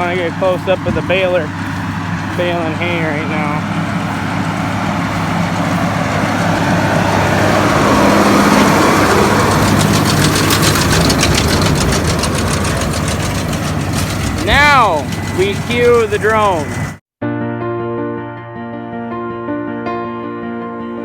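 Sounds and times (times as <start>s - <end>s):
hay baler rattling: 0.0s - 17.0s
tractor engine running: 0.0s - 17.0s.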